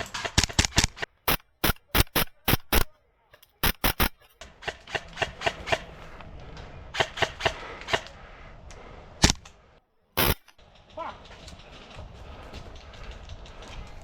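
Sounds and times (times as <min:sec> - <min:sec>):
airsoft gun shots: 0:00.0 - 0:02.9, 0:03.6 - 0:05.9, 0:06.9 - 0:08.1, 0:09.2 - 0:09.4, 0:10.2 - 0:10.5.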